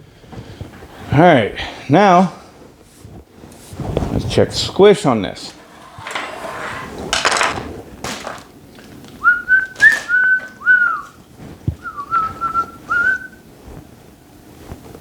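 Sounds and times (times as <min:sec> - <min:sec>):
tools clicking and knocking: 0:05.5 - 0:08.9, 0:09.8 - 0:10.5
man whistling a tune: 0:09.2 - 0:11.2, 0:11.8 - 0:13.4.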